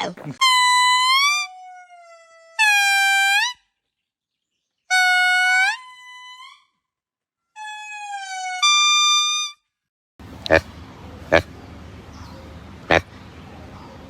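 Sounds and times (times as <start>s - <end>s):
monkey calling: 10.3s - 14.0s.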